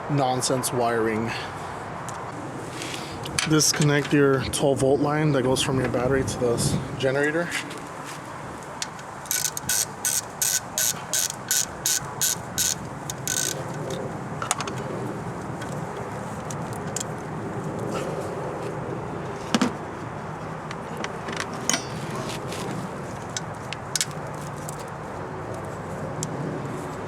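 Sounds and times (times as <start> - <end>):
ratchet wrench strokes: 8.8 - 14.0
metallic clicks of tools: 8.8 - 14.8.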